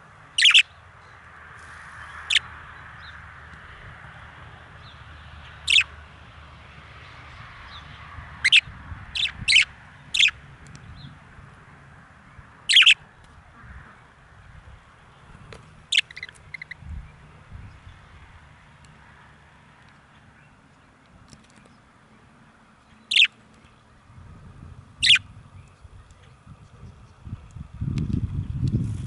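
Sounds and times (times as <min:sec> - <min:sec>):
budgerigars chirping: 0:00.4 - 0:00.8, 0:02.0 - 0:02.5, 0:05.6 - 0:05.9, 0:07.8 - 0:10.4, 0:12.6 - 0:13.0, 0:15.9 - 0:16.8, 0:22.9 - 0:23.4, 0:25.0 - 0:25.3.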